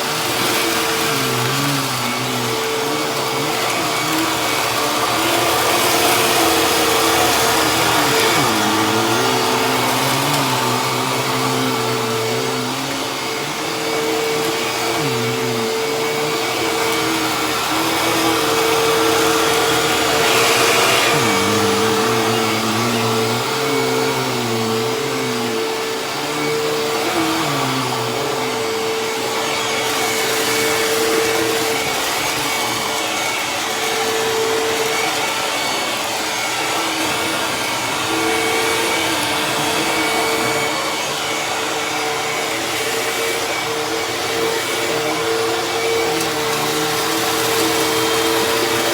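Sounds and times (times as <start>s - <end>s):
vacuum cleaner running: 0.0s - 48.9s.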